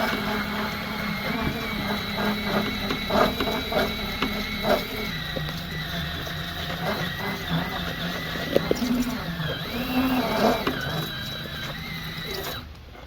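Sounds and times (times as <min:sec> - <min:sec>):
power drill whining: 0:00.0 - 0:13.0.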